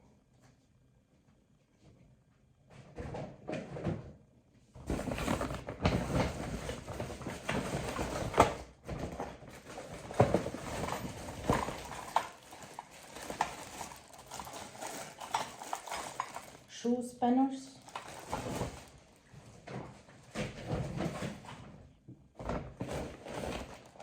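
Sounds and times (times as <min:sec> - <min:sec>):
plastic packaging rustling: 0:04.9 - 0:08.5, 0:09.6 - 0:16.8, 0:17.7 - 0:19.5, 0:22.8 - 0:24.0
items knocking and clicking: 0:04.9 - 0:16.7, 0:17.8 - 0:19.0, 0:19.6 - 0:24.0.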